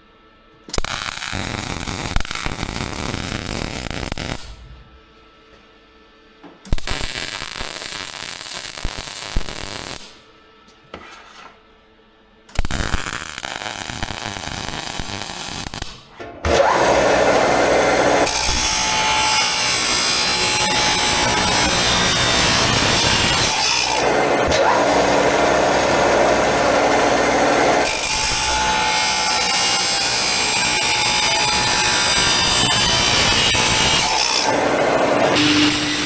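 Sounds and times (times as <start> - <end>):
power tool working metal: 16.5 - 36.0.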